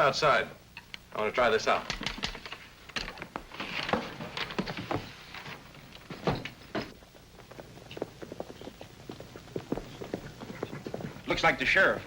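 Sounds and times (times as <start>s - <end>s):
footsteps: 3.2s - 12.0s
door opening and shutting: 6.1s - 7.0s.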